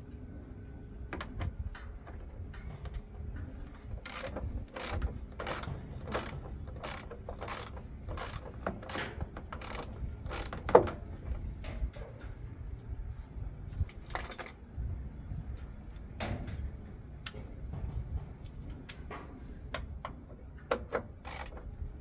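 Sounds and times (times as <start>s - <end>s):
ratchet tool clicking: 4.0s - 10.7s, 21.2s - 21.6s.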